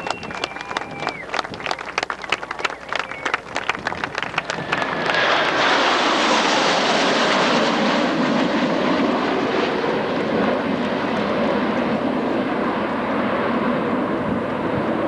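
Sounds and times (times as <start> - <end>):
jets passing low and loud: 0.0 - 11.5.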